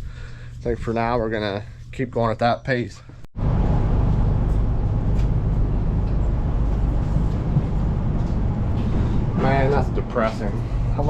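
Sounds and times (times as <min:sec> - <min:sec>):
low engine-like drone: 0:03.4 - 0:11.0.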